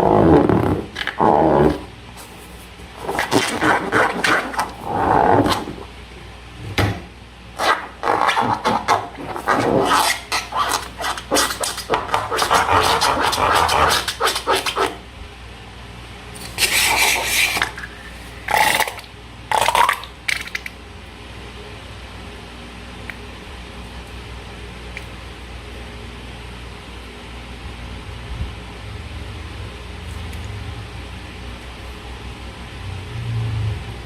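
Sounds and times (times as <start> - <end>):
sticky slime scraping and crackling: 0.0 - 5.9, 7.6 - 15.0.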